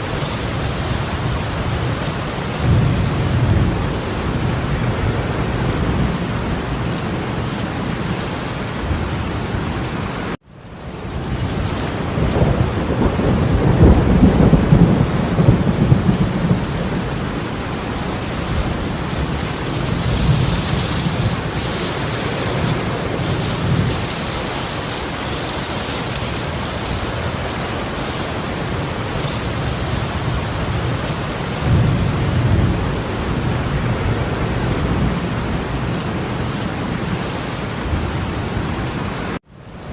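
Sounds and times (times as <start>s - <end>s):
torrential rain pouring: 0.0s - 39.9s.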